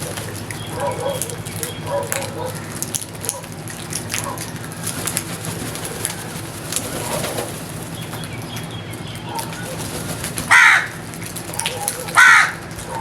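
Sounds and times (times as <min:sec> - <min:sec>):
steady background hum: 0:00.0 - 0:13.0
crow cawing: 0:10.5 - 0:11.0, 0:12.2 - 0:12.8.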